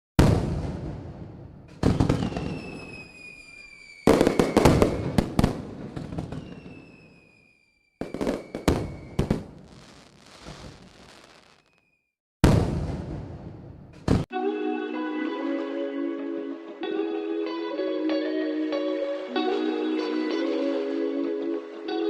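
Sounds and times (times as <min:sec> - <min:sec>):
firework booms: 0:00.2 - 0:14.3
firework whistle falling in pitch: 0:01.8 - 0:12.1
crackling hiss: 0:06.3 - 0:12.0.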